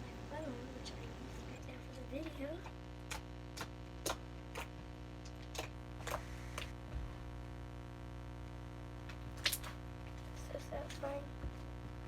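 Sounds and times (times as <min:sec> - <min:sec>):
steady low hum: 0:00.0 - 0:12.0
slime squished by hand: 0:09.3 - 0:09.8.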